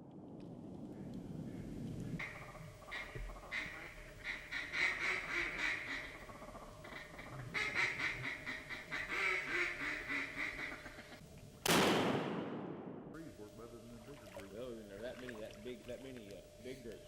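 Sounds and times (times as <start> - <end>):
duck quacking: 2.2 - 11.2
shotgun shot: 11.6 - 13.2.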